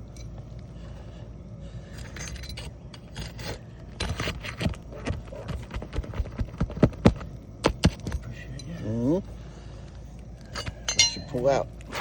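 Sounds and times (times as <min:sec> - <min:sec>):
metal tool clicking and scraping: 0:02.0 - 0:04.7.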